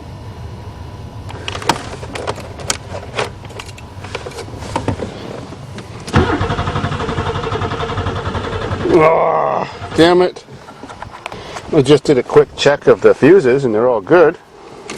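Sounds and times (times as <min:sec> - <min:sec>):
starter cranking engine: 0:06.0 - 0:09.1.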